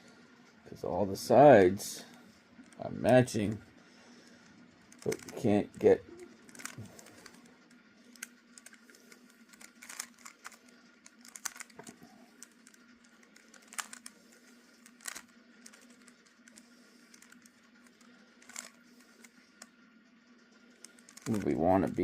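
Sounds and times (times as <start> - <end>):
faint steady hum: 0.0 - 22.0
puzzle cube layers clicking: 4.9 - 5.4, 6.3 - 7.4, 8.2 - 14.2, 14.8 - 19.3, 20.9 - 21.5.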